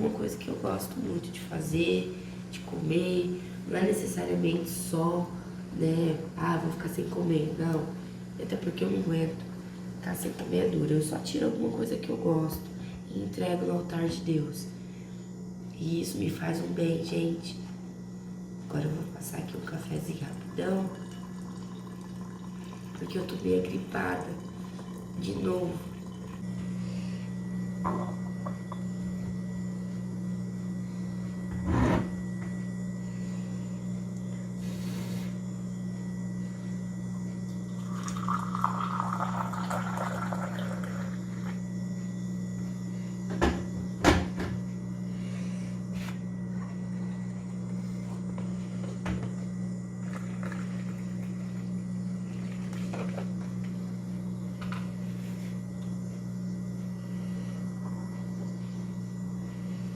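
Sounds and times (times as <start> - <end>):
steady low hum: 0.0 - 59.9
liquid pouring: 20.5 - 26.4, 37.7 - 41.2.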